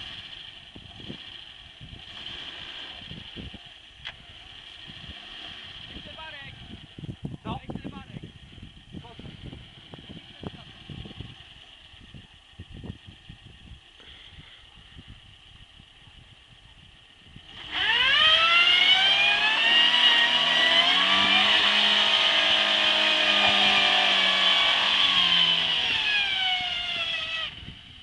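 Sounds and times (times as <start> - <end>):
car engine revving hard: 0.0 - 3.4, 4.4 - 6.4, 17.4 - 27.7.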